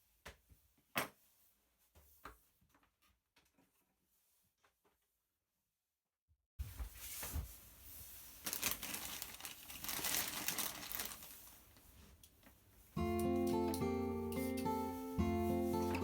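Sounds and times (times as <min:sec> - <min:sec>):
crinkling handling noise: 0:06.8 - 0:12.8
acoustic guitar music: 0:13.0 - 0:16.0.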